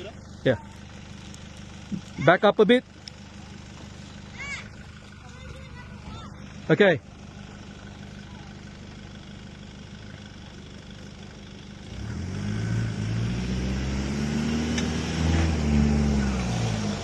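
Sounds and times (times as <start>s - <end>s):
off-road vehicle engine: 0.0s - 17.0s.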